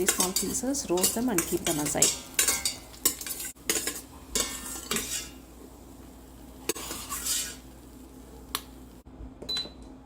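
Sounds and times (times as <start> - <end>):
metal spoon scraping a metal pot: 0.0 - 5.4, 6.7 - 7.6.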